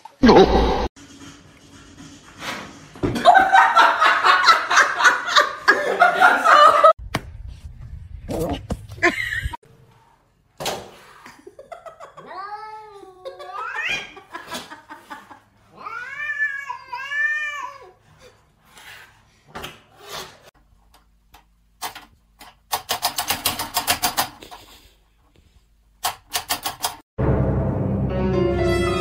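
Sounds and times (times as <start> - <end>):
cat meowing and yowling: 15.7 - 17.9.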